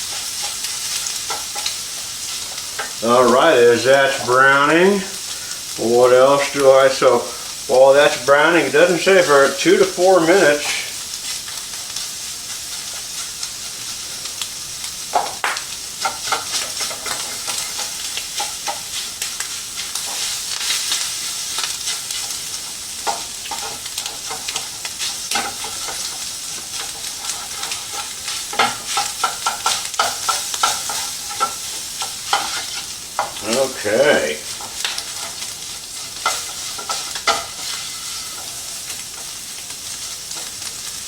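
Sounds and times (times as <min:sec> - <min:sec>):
meat sizzling in a skillet: 0:00.0 - 0:41.0
utensil scraping and clacking: 0:15.1 - 0:22.4, 0:23.0 - 0:33.7, 0:34.5 - 0:38.6.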